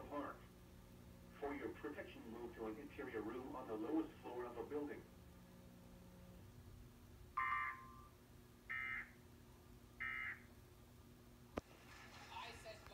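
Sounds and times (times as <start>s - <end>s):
faint steady hum: 0.0s - 12.9s
two-tone digital squawk bursts: 7.4s - 8.1s, 8.7s - 9.2s, 10.0s - 10.5s.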